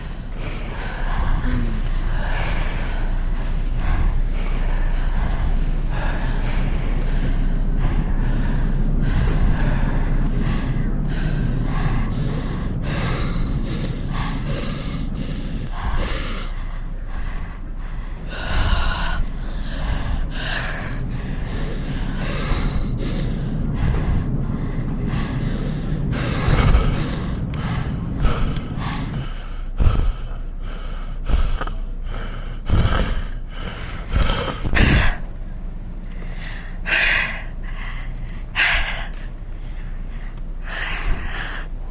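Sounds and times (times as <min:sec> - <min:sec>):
people breathing heavily: 0:00.0 - 0:41.9
steady low rumble: 0:00.0 - 0:41.9.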